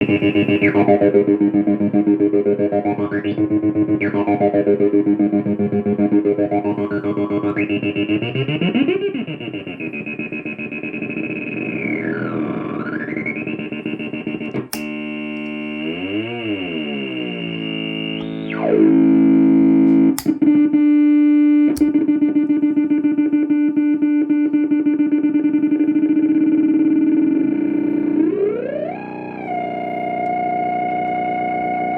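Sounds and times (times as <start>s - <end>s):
buzzy electronic synth drone: 0.0s - 21.2s, 21.8s - 31.9s
sharp clicks: 14.4s - 15.6s, 19.9s - 20.4s, 21.8s - 22.0s
pulsing synth drone: 22.7s - 31.9s.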